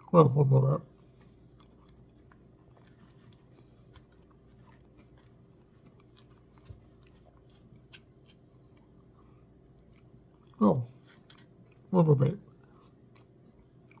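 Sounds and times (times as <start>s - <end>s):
faint chewing: 0.0s - 14.0s.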